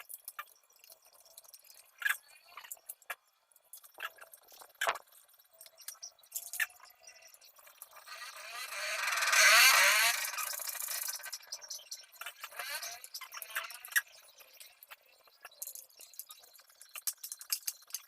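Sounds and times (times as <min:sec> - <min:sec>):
metal parts clicking and knocking: 0:10.2 - 0:18.0.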